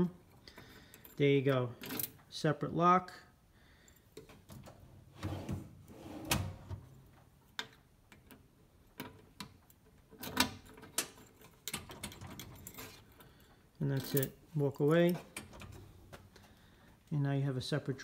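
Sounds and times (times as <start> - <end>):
metal drawer and lock clicks: 4.5 - 7.0, 10.2 - 13.0.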